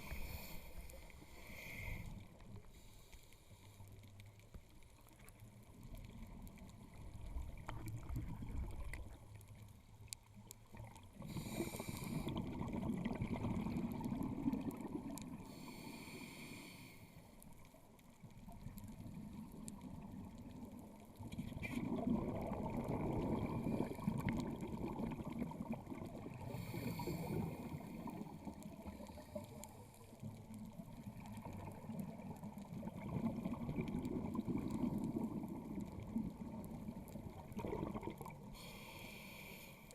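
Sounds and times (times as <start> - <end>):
diver breathing through regulator: 0.0 - 3.8, 11.2 - 12.5, 15.4 - 17.3, 26.4 - 28.1, 38.5 - 39.9
bubbling exhalations: 21.5 - 26.4, 37.4 - 38.4.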